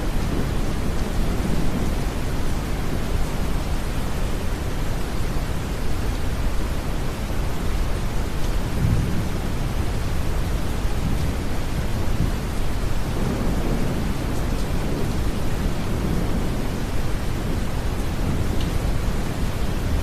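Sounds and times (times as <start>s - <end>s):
distant thunder: 0.0s - 3.9s, 10.9s - 20.0s
rain: 0.0s - 20.0s.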